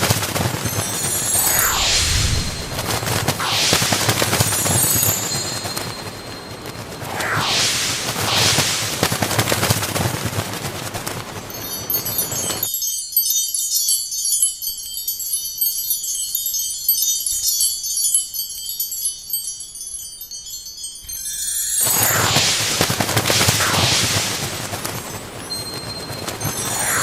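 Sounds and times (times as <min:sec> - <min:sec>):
loud rushing noise: 0:00.5 - 0:10.4, 0:21.8 - 0:27.0
wind chime tinkling: 0:04.6 - 0:06.6, 0:11.6 - 0:22.0.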